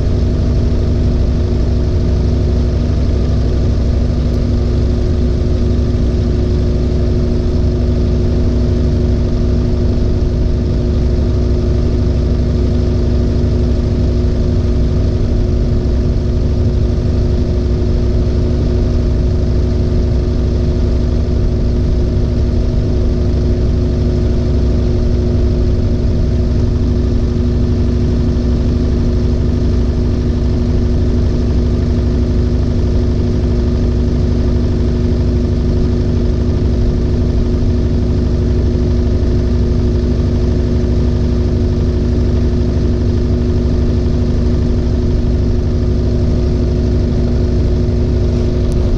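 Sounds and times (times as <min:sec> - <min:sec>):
washing machine spinning: 0:00.0 - 0:48.9.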